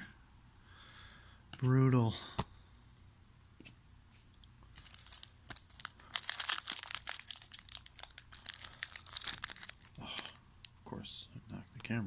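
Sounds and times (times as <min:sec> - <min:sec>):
wrapper crinkling and tearing: 0:04.7 - 0:10.4.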